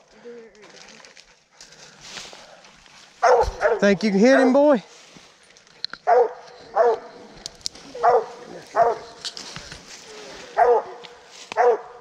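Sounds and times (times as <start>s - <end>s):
dog barking: 3.2s - 4.6s, 6.0s - 7.2s, 7.9s - 9.2s, 10.6s - 12.0s.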